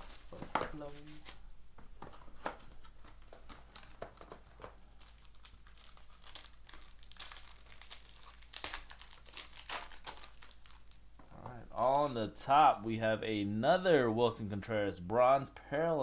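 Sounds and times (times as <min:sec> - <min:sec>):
plastic packaging crinkling and tearing: 0:00.0 - 0:01.4, 0:02.5 - 0:12.2.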